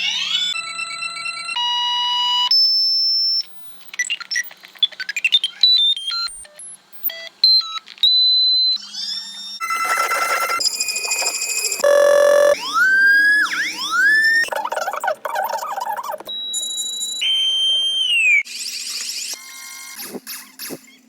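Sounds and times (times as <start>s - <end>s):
electronic alert beeps: 9.6s - 14.5s
rising chirps: 9.6s - 14.5s
rising electronic sweeps: 9.6s - 14.5s.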